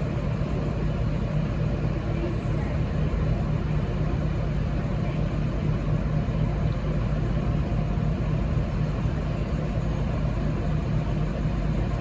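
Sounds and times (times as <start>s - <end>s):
diesel train engines idling: 0.0s - 12.0s.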